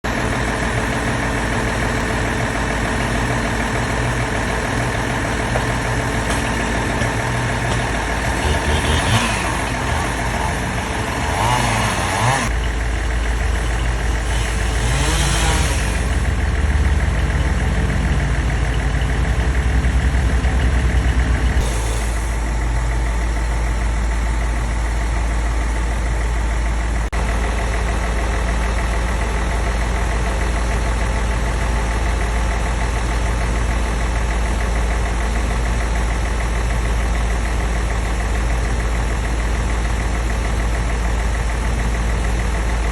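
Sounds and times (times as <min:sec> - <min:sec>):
heavy machinery engine revving: 0:00.1 - 0:23.6.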